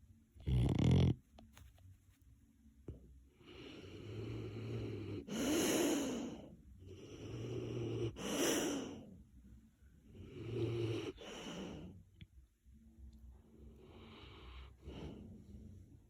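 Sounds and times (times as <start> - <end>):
dog snoring: 0.4 - 1.2, 3.4 - 9.1, 10.1 - 11.9.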